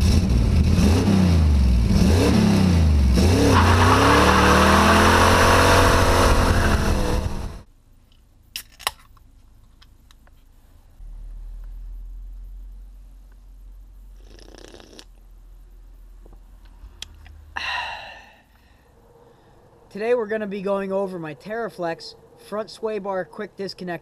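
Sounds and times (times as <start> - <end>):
engine revving: 0.0 - 7.6.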